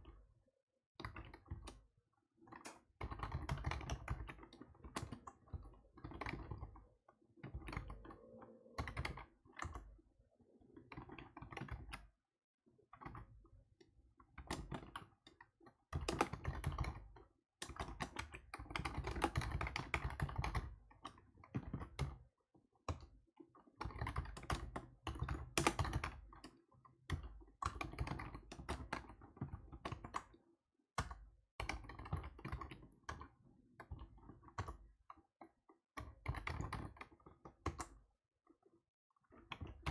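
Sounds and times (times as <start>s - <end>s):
typing on keyboard: 2.7s - 6.8s, 36.0s - 37.9s.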